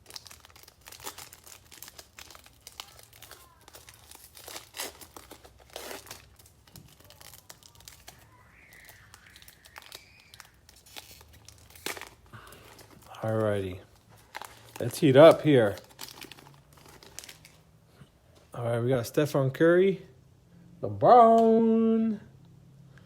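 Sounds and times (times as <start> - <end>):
wrapper crinkling and tearing: 0.0 - 17.6.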